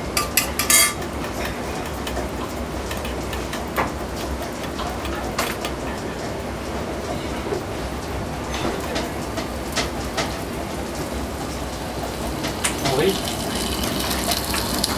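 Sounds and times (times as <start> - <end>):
kitchen hiss: 12.6 - 14.9.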